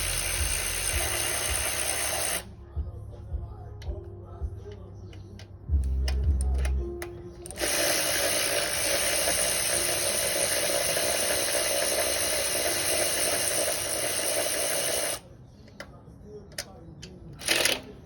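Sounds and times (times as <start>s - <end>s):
power tool running: 0.0s - 2.5s, 7.5s - 15.3s, 17.4s - 18.0s.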